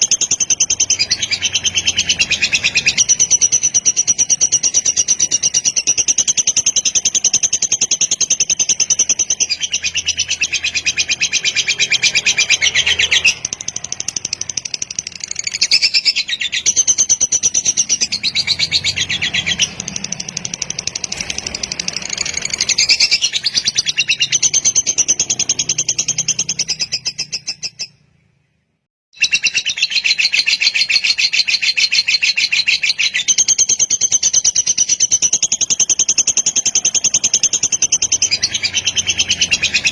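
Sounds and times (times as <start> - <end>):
lovebird chattering trill: 0.0 - 28.0, 29.2 - 39.9.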